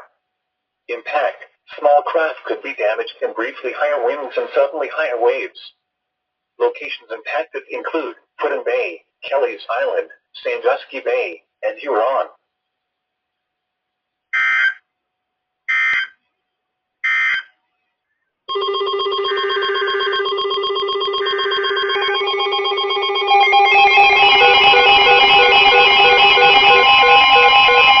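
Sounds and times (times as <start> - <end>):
chirping data bursts: 14.4 - 14.8, 15.7 - 16.2, 17.0 - 17.5
electronic alert tones: 18.5 - 28.0.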